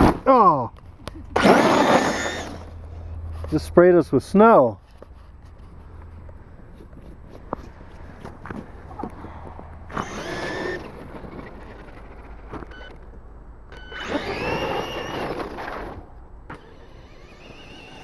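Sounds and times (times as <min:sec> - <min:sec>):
electric motor whining: 0:01.4 - 0:02.8, 0:09.9 - 0:12.3, 0:13.7 - 0:18.0
tyres churning snow: 0:01.4 - 0:02.8, 0:09.9 - 0:12.6, 0:13.8 - 0:18.0.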